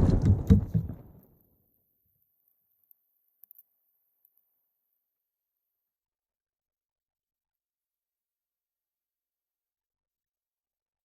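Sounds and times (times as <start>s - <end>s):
faint clicks: 2.4s - 4.5s.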